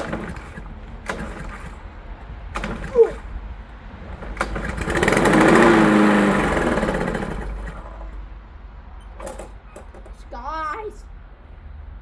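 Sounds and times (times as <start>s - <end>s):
lawn mower engine sputtering out: 0.0s - 8.3s
recoil starter pull: 0.0s - 8.3s, 9.1s - 10.1s.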